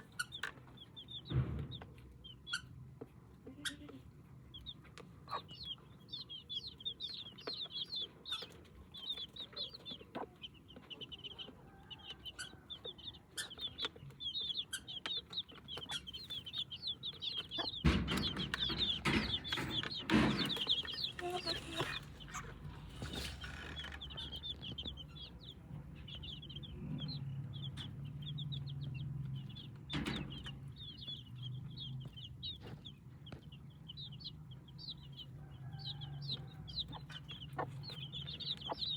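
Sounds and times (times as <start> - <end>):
chicks peeping: 0.0 - 38.9
hen clucking: 0.0 - 38.9
scuffling and knocking: 17.8 - 25.0.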